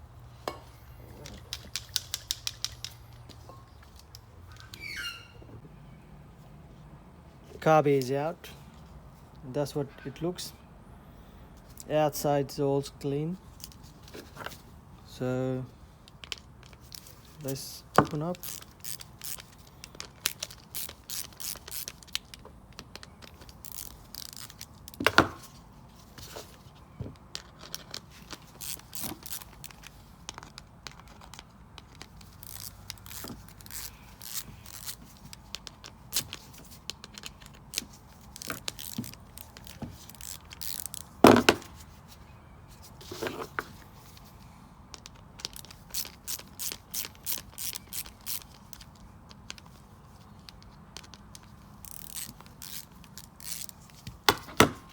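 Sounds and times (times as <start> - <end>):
tools clicking and scraping plastic: 1.1 - 4.8, 16.0 - 25.6, 26.2 - 41.8, 44.9 - 54.9.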